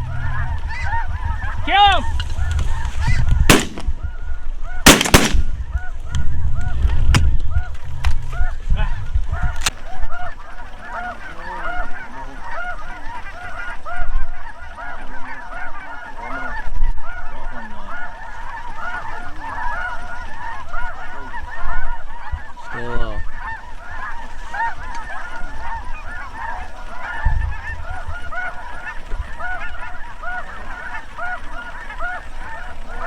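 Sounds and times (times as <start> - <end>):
geese honking: 0.0 - 6.9, 7.5 - 33.0
shotgun blasts: 3.5 - 4.0, 4.8 - 5.6.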